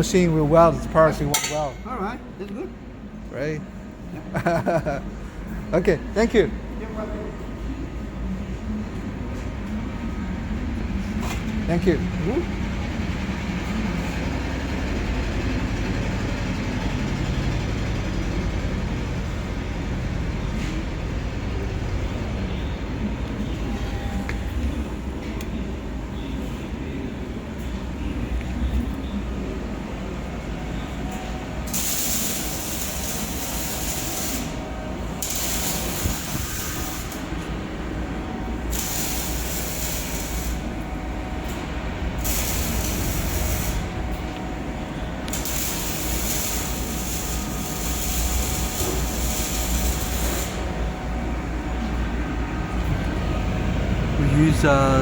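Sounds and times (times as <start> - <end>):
laser welder hissing: 31.7 - 34.6, 35.2 - 37.2, 38.7 - 40.7, 42.2 - 43.9, 45.3 - 50.7.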